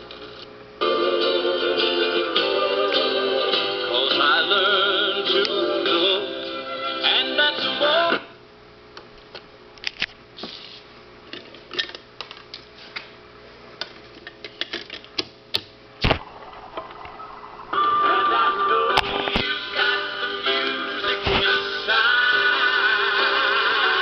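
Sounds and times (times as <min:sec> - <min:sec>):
record player music with singing: 0:00.0 - 0:09.0, 0:16.0 - 0:24.0.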